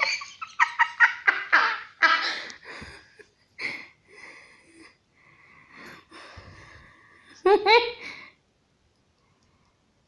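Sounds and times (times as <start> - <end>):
person laughing wheezily: 0.0 - 4.0.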